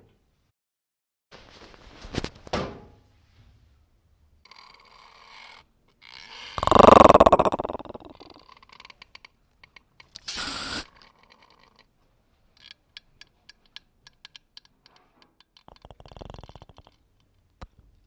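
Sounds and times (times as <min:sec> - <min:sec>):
short scraping hiss: 0:10.2 - 0:10.9.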